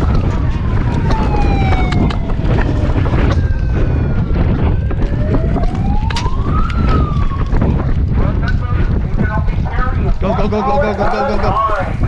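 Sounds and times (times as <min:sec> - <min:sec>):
siren tone: 0:00.0 - 0:08.1
wind buffeting microphone: 0:00.0 - 0:12.0.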